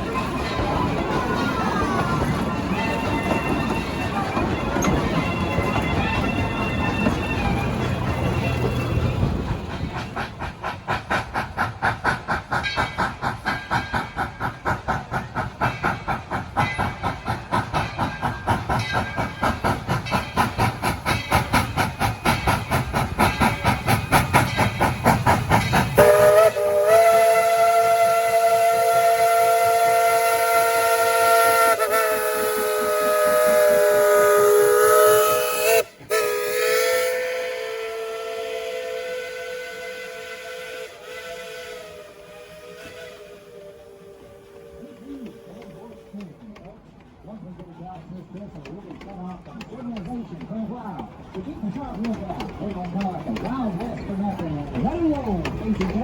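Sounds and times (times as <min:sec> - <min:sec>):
steam locomotive exhaust chuffs: 0:00.0 - 0:56.0
steam locomotive whistle: 0:25.9 - 0:46.2.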